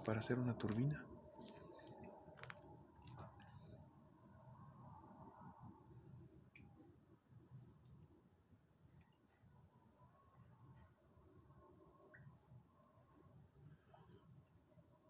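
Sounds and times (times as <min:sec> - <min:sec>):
cricket trilling: 0:00.0 - 0:15.0.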